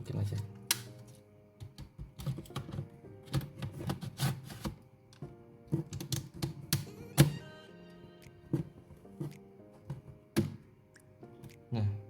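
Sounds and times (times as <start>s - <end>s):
background music: 0.0s - 12.0s
plastic caddy clicks and knocks: 1.6s - 6.9s, 9.9s - 10.6s.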